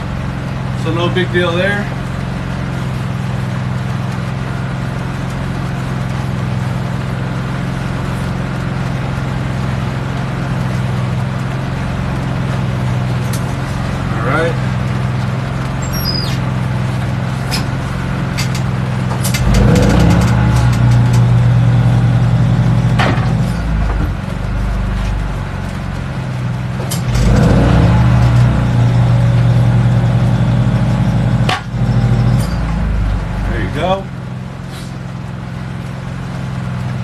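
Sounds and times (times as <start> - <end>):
tire rumbling onto rim: 0.0 - 37.0
vehicle engine humming: 0.0 - 37.0
clanks and scrapes: 15.8 - 21.5, 31.5 - 32.8.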